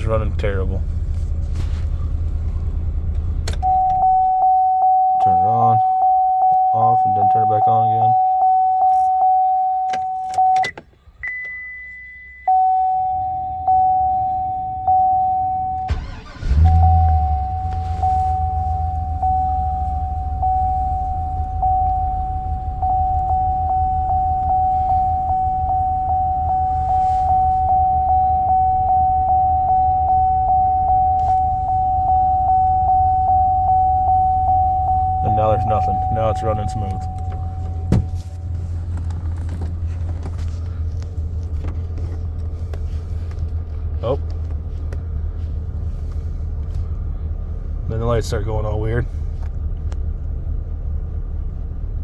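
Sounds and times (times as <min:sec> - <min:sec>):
car engine idling: 0:00.0 - 0:52.0
car warning chime dinging: 0:03.5 - 0:38.8
high beep: 0:03.6 - 0:16.0, 0:16.6 - 0:38.2
engine starter cranking: 0:15.8 - 0:17.4.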